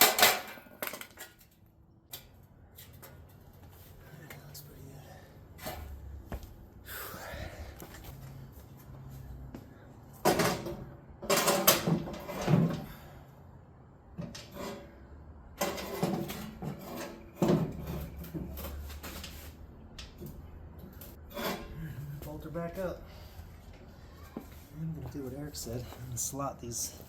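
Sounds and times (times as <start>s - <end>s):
metal tools clattering on workbench: 0.0s - 1.5s, 10.2s - 12.9s.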